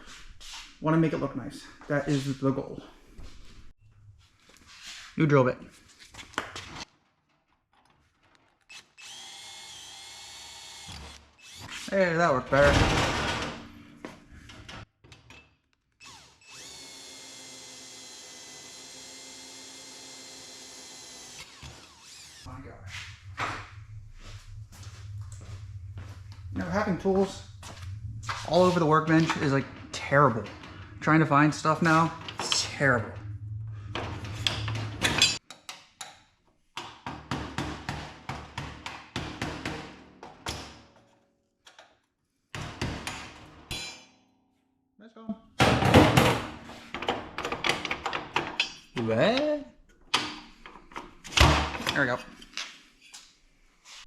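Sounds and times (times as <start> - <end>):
electric drill drilling metal: 8.7 - 11.8, 16.0 - 22.5
low hum: 22.1 - 35.4.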